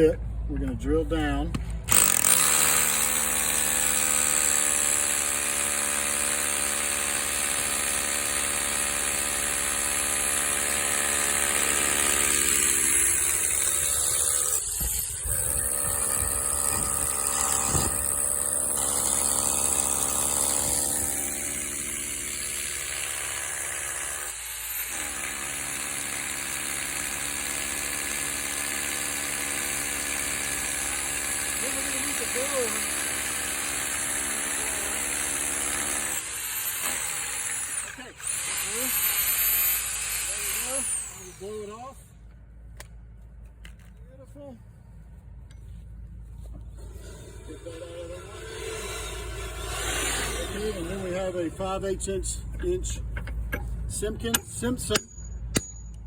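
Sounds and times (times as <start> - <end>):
hammer drill drilling into concrete: 1.9 - 41.9, 46.8 - 51.4.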